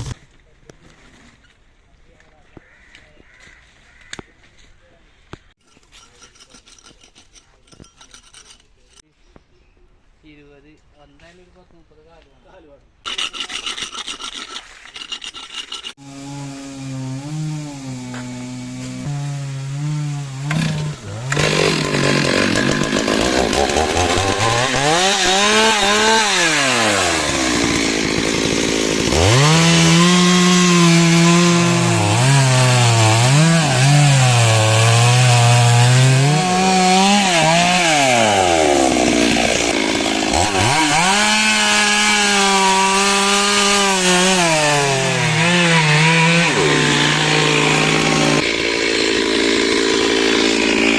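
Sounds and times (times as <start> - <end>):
chainsaw revving and cutting wood: 15.1 - 50.9.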